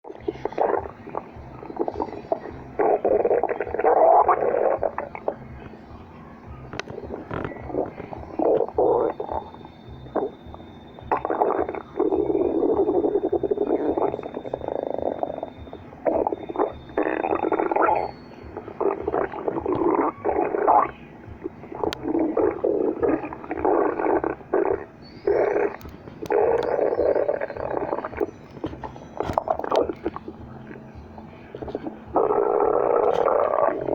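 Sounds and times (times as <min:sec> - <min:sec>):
stomach growling and gurgling: 0:00.0 - 0:05.9, 0:06.5 - 0:33.9.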